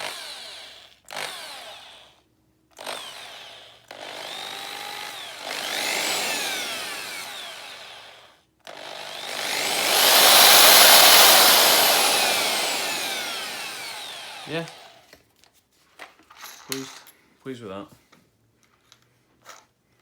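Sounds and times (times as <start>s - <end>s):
hammer drill motor: 0.0s - 15.2s.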